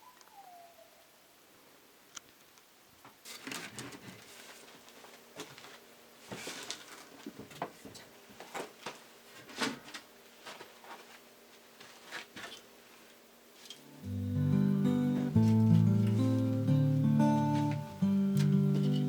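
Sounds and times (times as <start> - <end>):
strummed acoustic guitar: 13.8 - 19.0.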